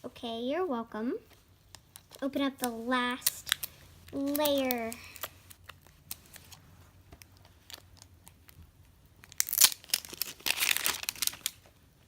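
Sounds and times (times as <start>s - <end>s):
plastic wrapping tearing and crinkling: 1.7s - 6.6s, 7.2s - 11.7s.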